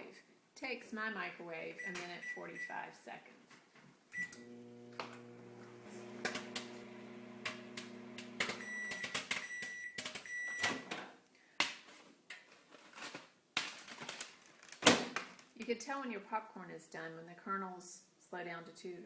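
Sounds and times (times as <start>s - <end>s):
microwave beeps: 4.2s - 4.6s, 6.3s - 10.7s
microwave oven humming: 4.2s - 9.0s.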